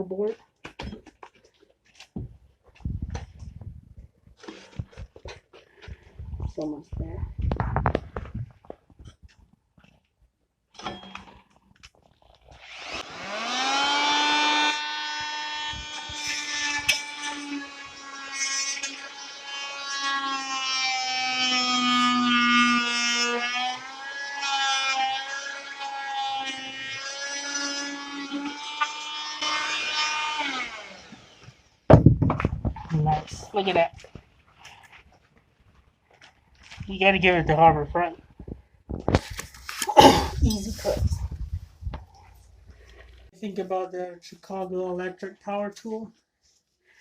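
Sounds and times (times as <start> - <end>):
oscillating multi-tool whine: 12.5 - 31.6
tool winding down: 12.6 - 31.4
knocks: 31.9 - 32.8.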